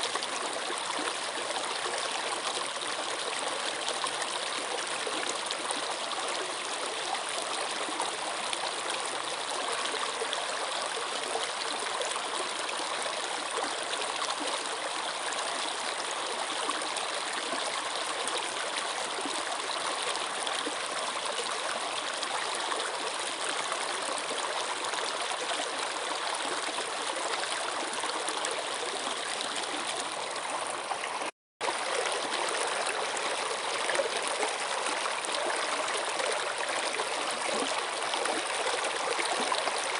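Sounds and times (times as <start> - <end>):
running water rushing: 25.8 - 39.9.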